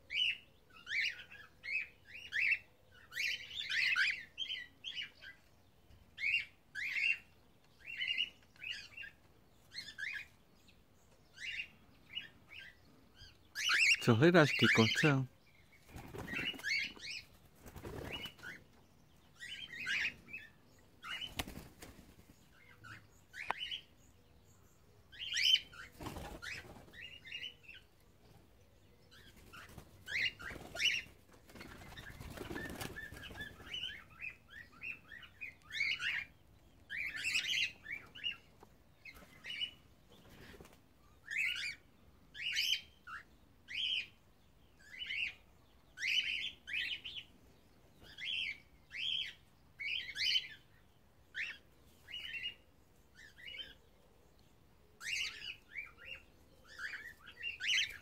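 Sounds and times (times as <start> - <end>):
wings flapping: 15.8 - 18.6, 21.1 - 22.4, 25.9 - 27.0, 29.3 - 33.9
cockatiels chirping: 55.0 - 58.0.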